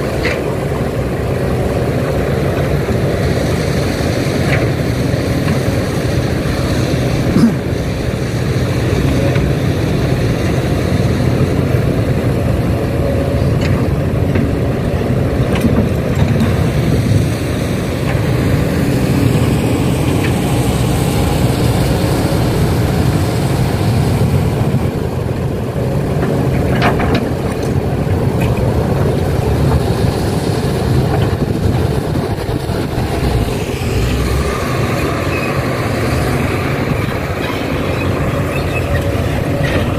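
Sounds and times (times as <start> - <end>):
heavy diesel machinery running: 0.0 - 39.9
knocks and clanks: 26.2 - 27.7.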